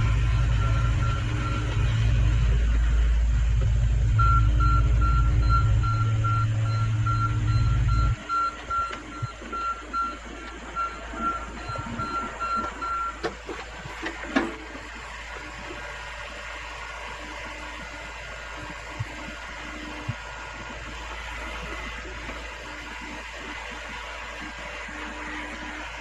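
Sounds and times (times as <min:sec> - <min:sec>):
dump truck engine running: 0:00.0 - 0:26.0
back-up alarm beeping: 0:04.2 - 0:14.6.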